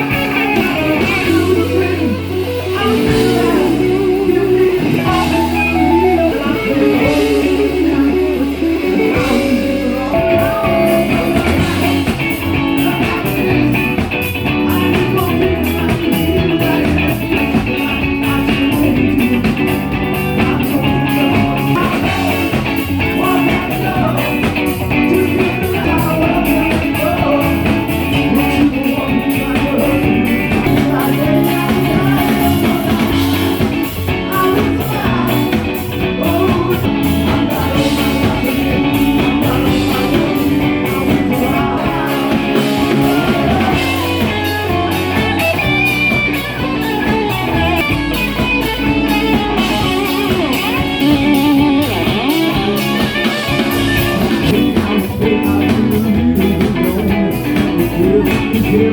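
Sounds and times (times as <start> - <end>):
electric guitar: 0.0 - 58.9
live rock band playing: 0.0 - 58.9
steady drum beat: 0.0 - 58.9.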